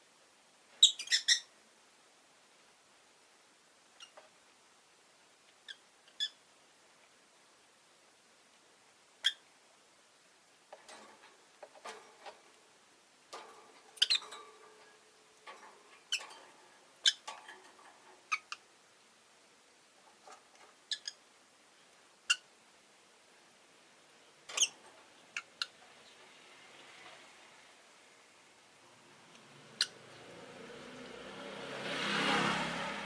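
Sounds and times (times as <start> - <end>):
lovebirds chirping: 0.8 - 1.5, 13.8 - 15.0, 15.9 - 17.3, 18.2 - 18.7, 20.8 - 22.5, 24.1 - 27.5.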